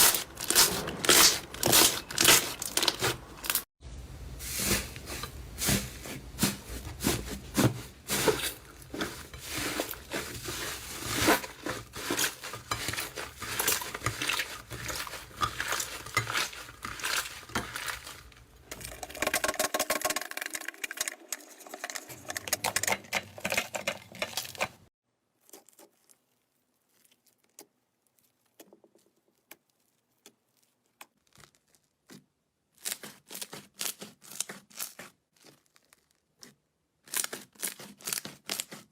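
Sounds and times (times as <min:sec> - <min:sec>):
slime crackling and popping: 0:00.0 - 0:03.6, 0:32.8 - 0:38.8.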